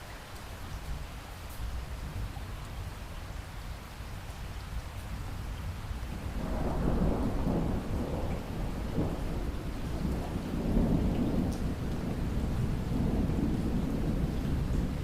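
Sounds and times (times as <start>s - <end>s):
heavy pouring rain: 0.0s - 15.0s
rolling thunder: 6.1s - 15.0s.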